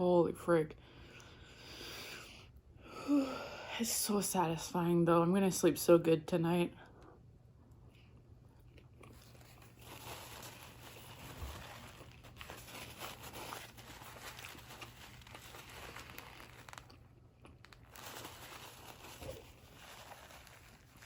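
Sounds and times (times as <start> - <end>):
person chewing: 8.1 - 18.3
sandwich wrapper crinkling: 8.7 - 21.0.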